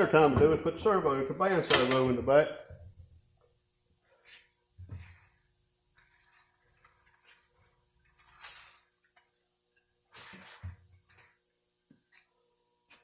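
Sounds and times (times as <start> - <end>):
metal parts clicking and tapping: 5.9 - 13.0.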